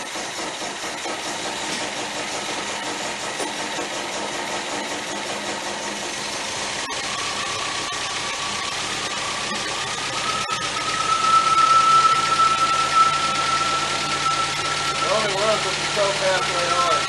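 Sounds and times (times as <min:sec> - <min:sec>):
car engine running: 0:00.0 - 0:17.0
high whine: 0:06.8 - 0:17.0.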